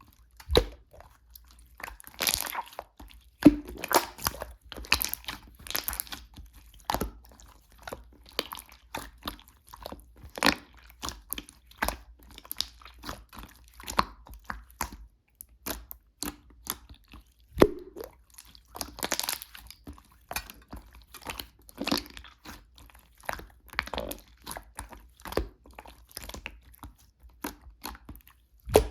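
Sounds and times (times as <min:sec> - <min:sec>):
slime crackling and popping: 0:01.8 - 0:02.8, 0:03.4 - 0:06.3, 0:17.6 - 0:19.8, 0:28.7 - 0:28.9.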